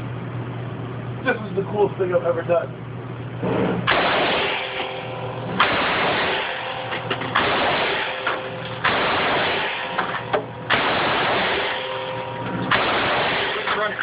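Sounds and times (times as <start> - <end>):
machine gun firing bursts: 3.9 - 4.8, 5.6 - 10.0, 10.7 - 12.0, 12.7 - 14.0.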